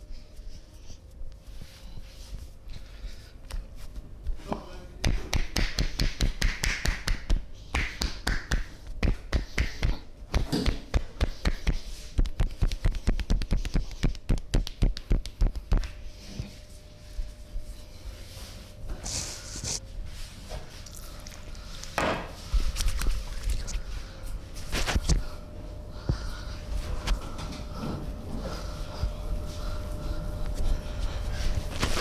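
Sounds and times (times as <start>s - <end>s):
hands tapping and slapping body: 5.0s - 16.0s.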